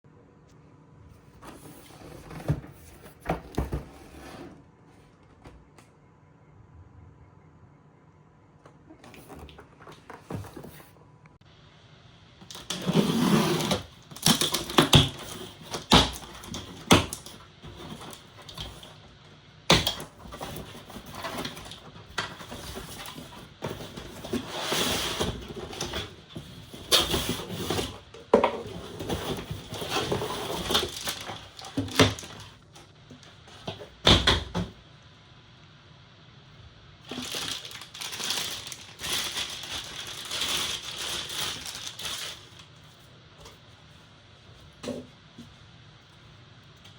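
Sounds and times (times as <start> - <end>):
cardboard rustling and scraping: 1.2 - 5.2, 9.0 - 11.0, 12.5 - 19.0, 19.7 - 32.7, 37.1 - 43.7.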